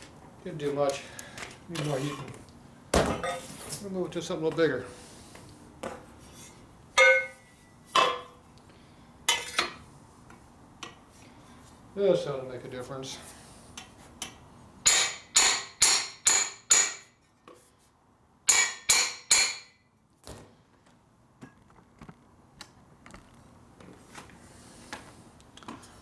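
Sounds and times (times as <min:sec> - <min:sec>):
hammer striking metal pipe: 0:07.0 - 0:08.3, 0:14.2 - 0:17.1, 0:18.5 - 0:19.8.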